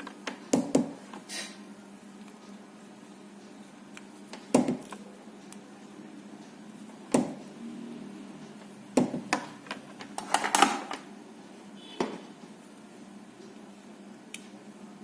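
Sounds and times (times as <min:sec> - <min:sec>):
steady low hum: 0:00.0 - 0:10.2.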